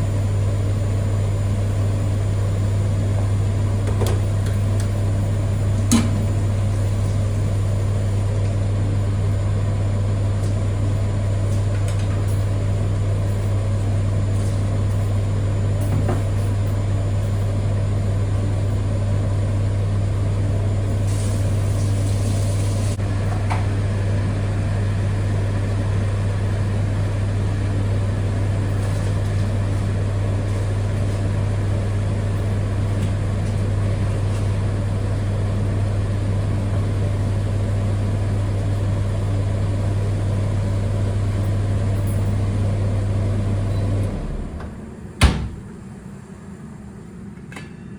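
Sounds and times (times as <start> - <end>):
low electric appliance hum: 0.0 - 47.9.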